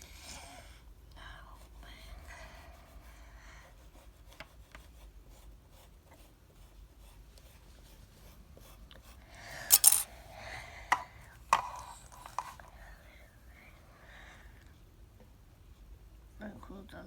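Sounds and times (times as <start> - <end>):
hands working modelling clay: 10.9 - 12.8.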